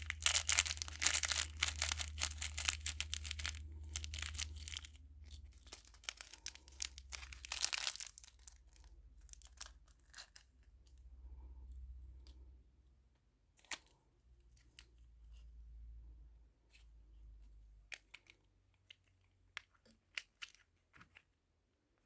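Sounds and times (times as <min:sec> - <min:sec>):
packaging crinkling and tearing: 0:00.0 - 0:04.9, 0:05.6 - 0:10.2
small pieces clicking and tapping: 0:00.0 - 0:08.6.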